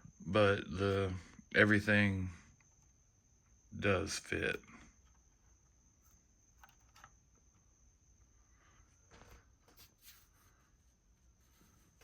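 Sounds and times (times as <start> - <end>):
small parts clicking and rustling: 6.0 - 7.4.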